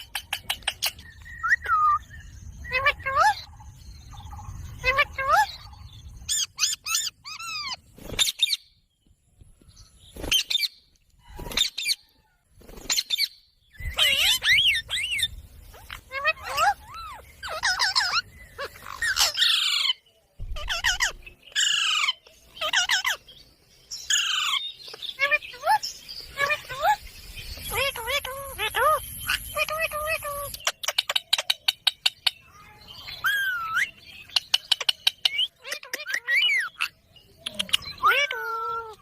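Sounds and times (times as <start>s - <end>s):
parrot squawking: 2.7s - 3.5s, 4.8s - 5.7s, 6.3s - 7.8s, 13.8s - 23.2s, 27.7s - 31.8s, 33.2s - 37.0s, 37.6s - 39.0s.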